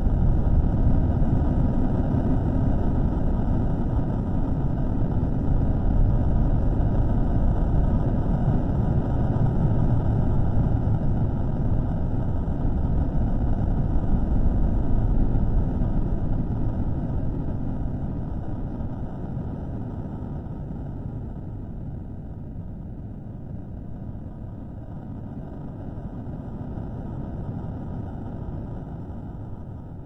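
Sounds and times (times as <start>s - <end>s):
low rumbling noise: 0.0s - 30.0s.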